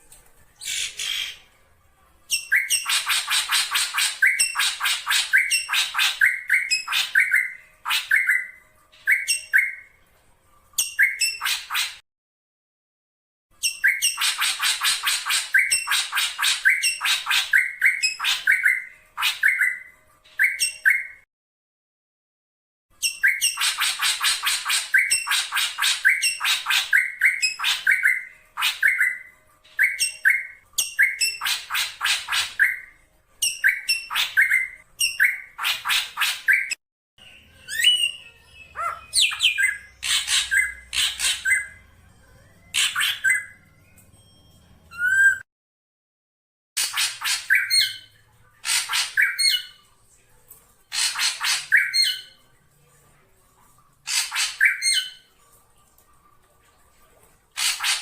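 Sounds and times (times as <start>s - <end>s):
bird harsh repeated calls: 0.6s - 1.4s, 2.4s - 9.8s, 38.7s - 41.8s, 50.9s - 52.3s, 54.1s - 55.1s.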